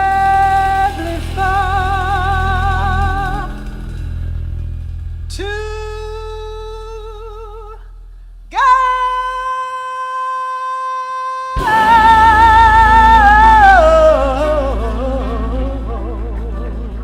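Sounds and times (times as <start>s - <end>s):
low band accompaniment: 0.0s - 8.6s, 11.6s - 17.0s
woman singing long notes: 8.5s - 17.0s.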